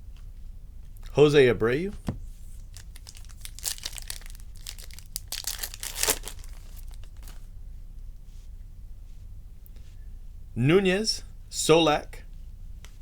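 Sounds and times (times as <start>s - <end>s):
wrapper crinkling and rustling: 2.4s - 7.5s.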